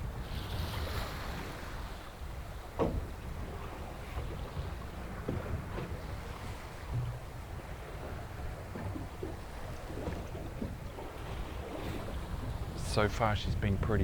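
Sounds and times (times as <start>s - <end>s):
water lapping against boat hull: 0.0s - 14.0s
wind buffeting microphone: 0.0s - 14.0s
knock on boat hull: 2.8s - 3.2s, 6.8s - 7.2s.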